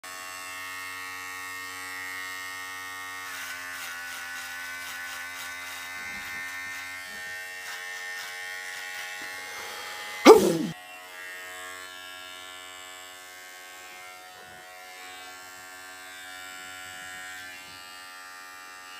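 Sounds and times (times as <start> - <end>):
electric shaver buzzing: 0.1 - 18.9
shaver crackling through stubble: 3.2 - 9.4.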